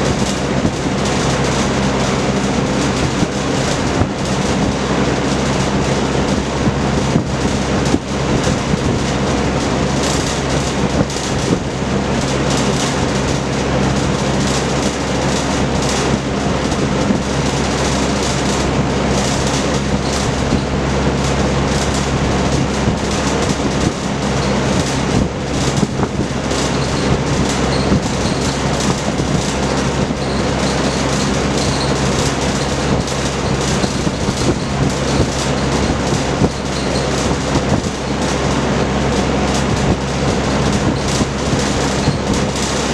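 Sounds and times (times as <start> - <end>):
box fan running: 0.0 - 42.9
fan clicks and rattles: 0.0 - 42.9.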